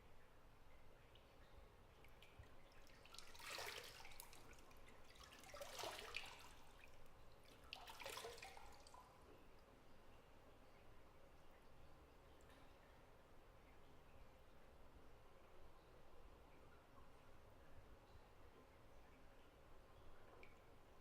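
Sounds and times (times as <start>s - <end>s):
water splashing in bathtub: 1.9s - 9.1s.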